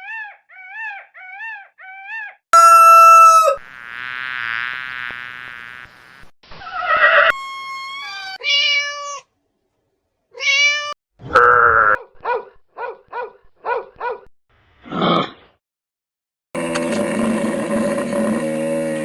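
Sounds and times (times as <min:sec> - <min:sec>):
cat meowing: 0:07.3 - 0:09.3.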